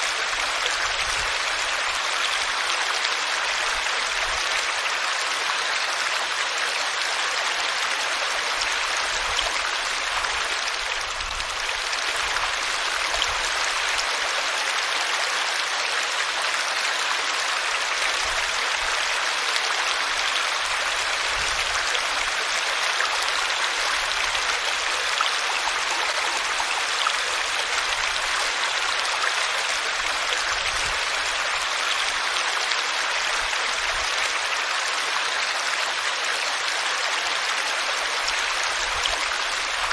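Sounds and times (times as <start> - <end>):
stream water babbling: 0.0 - 39.9.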